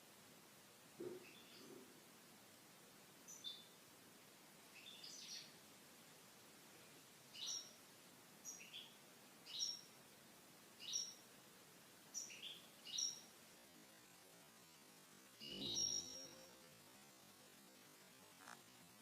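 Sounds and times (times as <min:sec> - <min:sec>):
faint bird chirps: 0:01.0 - 0:02.0, 0:03.2 - 0:03.8, 0:04.7 - 0:05.6, 0:06.8 - 0:07.8, 0:08.4 - 0:10.0, 0:10.8 - 0:11.3, 0:12.1 - 0:13.3, 0:14.7 - 0:16.8.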